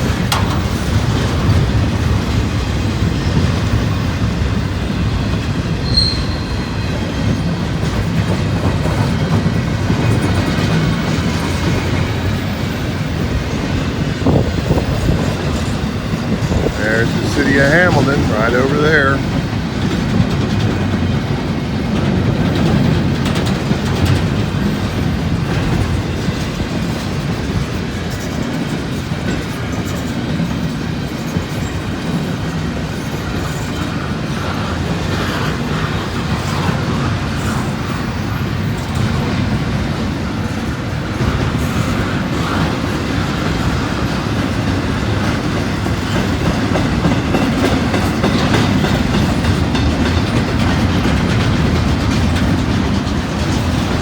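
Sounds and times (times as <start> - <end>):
wheels clicking over rail joints: 0.0 - 4.7, 7.2 - 54.0
freight train rolling past: 0.0 - 54.0.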